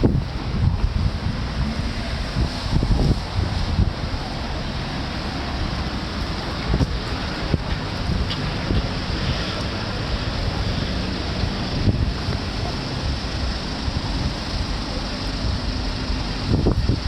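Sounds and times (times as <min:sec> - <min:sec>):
gusty wind buffeting microphone: 0:00.0 - 0:17.0.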